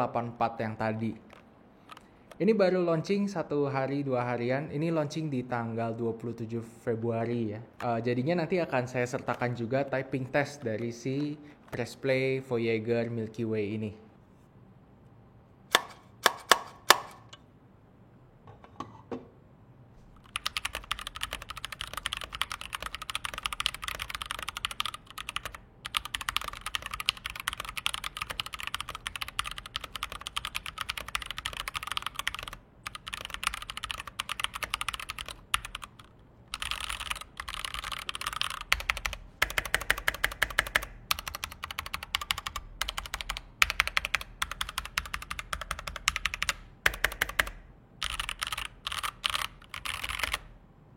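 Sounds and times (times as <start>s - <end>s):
mechanical keyboard typing: 20.2s - 50.5s.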